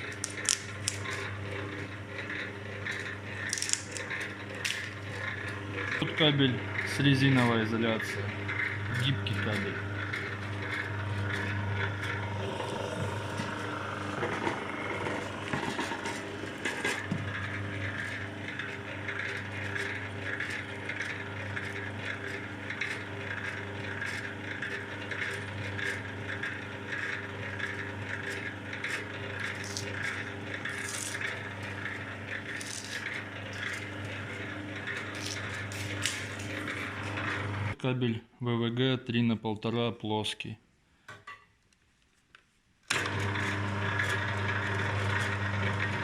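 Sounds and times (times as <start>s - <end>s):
machine motor humming: 0.0s - 37.8s, 42.9s - 46.0s
rattling and scraping: 8.4s - 21.8s.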